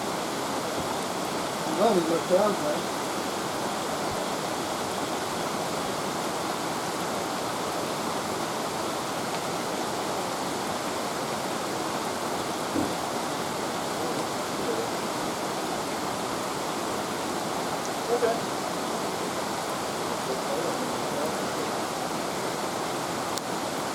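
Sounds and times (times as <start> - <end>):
floodwater rushing: 0.0 - 23.9
small knock: 12.8 - 13.0.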